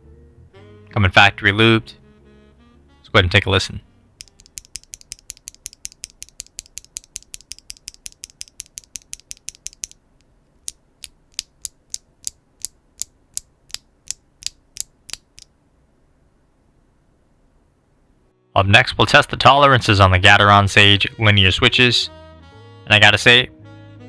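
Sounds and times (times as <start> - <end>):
mechanical keyboard clacks: 4.2 - 10.0.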